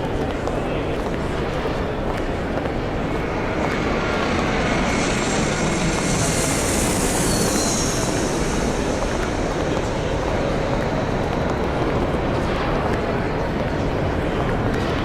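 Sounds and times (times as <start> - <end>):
airport terminal background noise: 0.0 - 15.0
faint falling whine: 1.3 - 14.9
hissing rush passing: 2.7 - 13.5.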